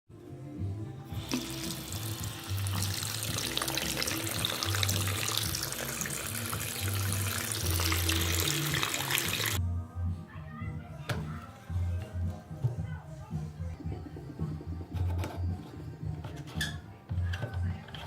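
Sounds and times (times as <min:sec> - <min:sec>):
background music with bass: 0:00.1 - 0:18.0
faucet spraying water into sink: 0:01.2 - 0:09.6.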